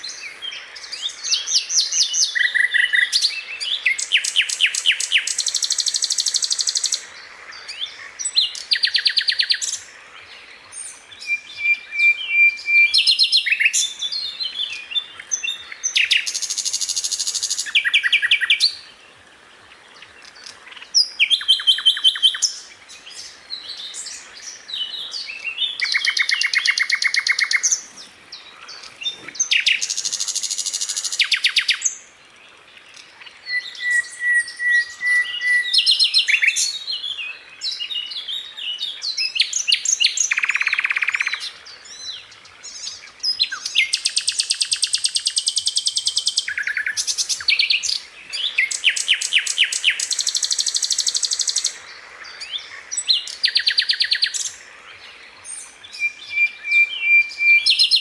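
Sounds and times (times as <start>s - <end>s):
long whistled bird notes: 33.4s - 36.8s.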